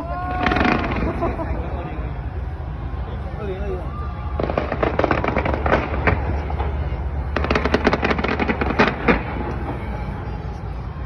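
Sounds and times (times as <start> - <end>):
steady low rumble: 0.0 - 11.0
fireworks crackling pops: 0.3 - 1.4, 4.4 - 10.6.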